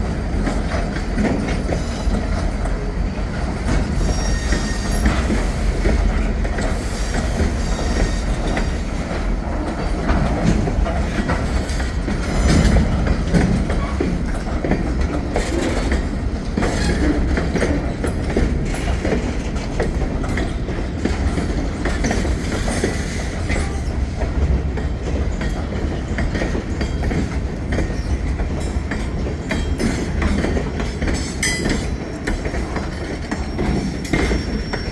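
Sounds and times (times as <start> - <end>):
freight train rumbling: 0.0 - 34.9
wheels clicking over rail joints: 0.2 - 34.9
wheel squeal: 4.0 - 5.2.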